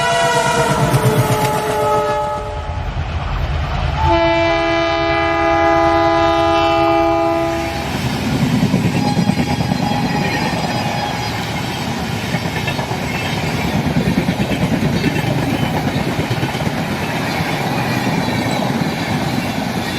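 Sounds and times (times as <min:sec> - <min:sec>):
train wheels clickety-clack on rails: 0:00.0 - 0:02.3, 0:06.8 - 0:19.9
train horn: 0:00.0 - 0:02.9, 0:04.0 - 0:07.9.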